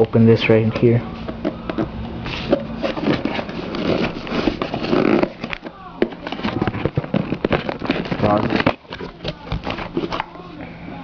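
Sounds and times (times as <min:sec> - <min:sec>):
steady low hum: 0:00.0 - 0:11.0
packaging rustling: 0:01.7 - 0:10.4
cardboard box being opened: 0:02.3 - 0:10.2.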